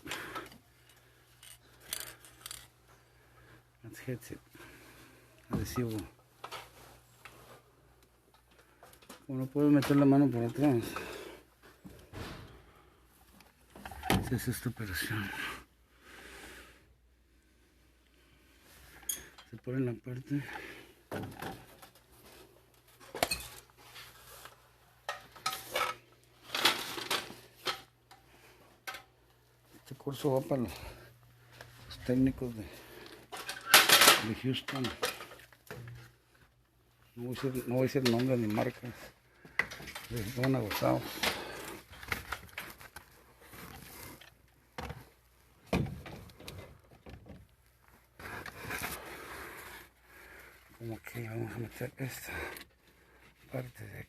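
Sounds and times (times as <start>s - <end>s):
clicks of handling metal tools: 0.4s - 2.7s, 19.0s - 19.6s
metal parts clinking and scraping: 0.8s - 2.8s, 25.1s - 27.9s, 33.3s - 35.7s.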